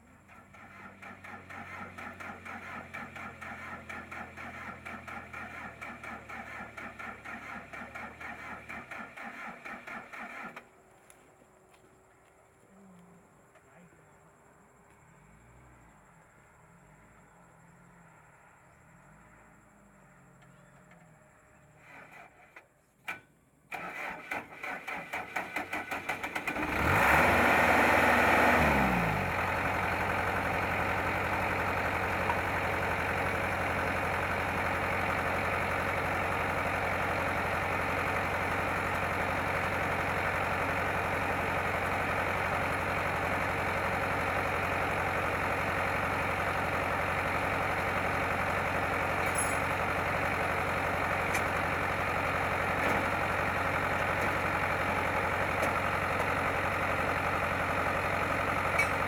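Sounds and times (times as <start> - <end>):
harvester engine running: 0.0 - 12.4, 15.7 - 59.0
engine starter cranking: 0.2 - 10.7, 21.7 - 43.9, 48.0 - 59.0.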